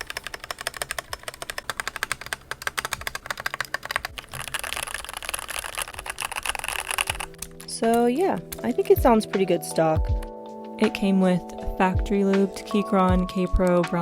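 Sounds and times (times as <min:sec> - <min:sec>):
mechanical keyboard typing: 0:00.0 - 0:09.3, 0:12.7 - 0:14.0.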